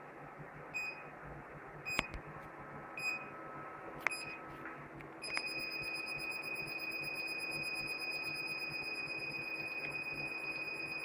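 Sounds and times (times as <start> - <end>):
short high-pitched alarm beeps: 5.2 - 11.0
steady high alarm tone: 5.2 - 11.0.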